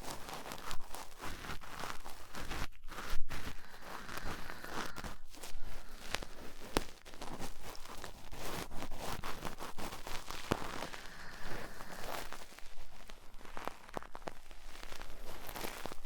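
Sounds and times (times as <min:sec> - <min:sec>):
cotton swab scratching microphone: 0:00.0 - 0:16.0.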